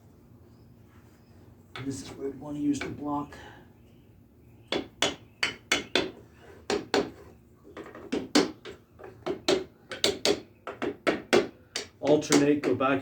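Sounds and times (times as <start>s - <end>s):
hammer tapping on wooden block: 4.7s - 7.1s, 7.8s - 12.8s.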